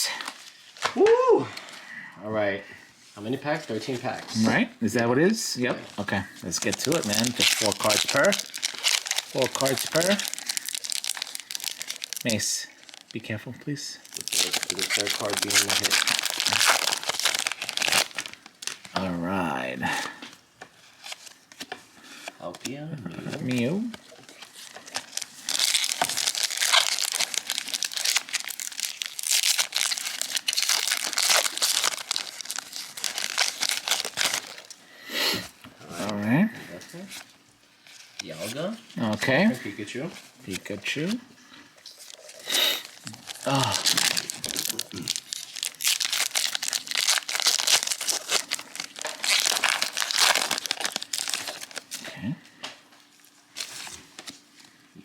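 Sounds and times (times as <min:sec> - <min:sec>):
foil wrapper torn open: 0:06.5 - 0:13.2, 0:14.0 - 0:19.0, 0:24.4 - 0:34.8, 0:41.8 - 0:52.0.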